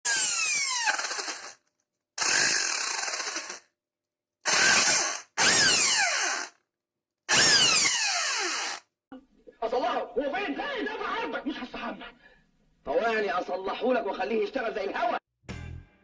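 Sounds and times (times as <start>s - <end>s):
rotary hammer drill whine: 0.0s - 3.7s, 4.4s - 6.6s, 7.3s - 8.9s.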